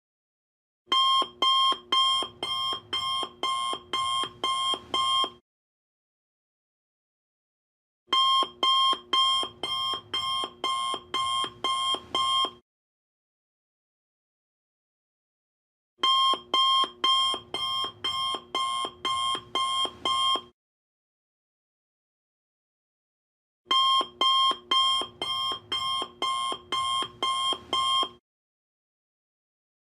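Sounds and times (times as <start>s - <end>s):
alarm clock buzzy beeping: 0.9s - 5.4s, 8.2s - 12.6s, 16.0s - 20.5s, 23.7s - 28.2s.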